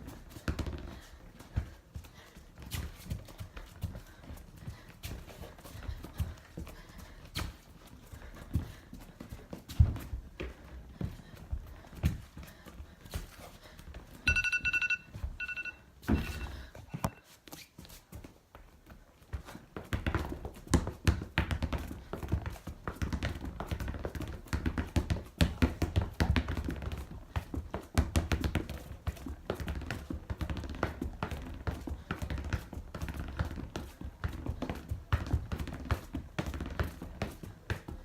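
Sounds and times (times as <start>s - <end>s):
short ringing tone: 14.3s - 17.2s.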